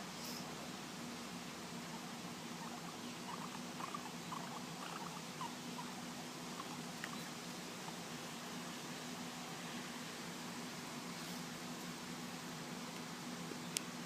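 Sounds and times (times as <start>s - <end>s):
background hiss: 0.0s - 14.0s
guinea pig squeaking: 1.9s - 7.4s.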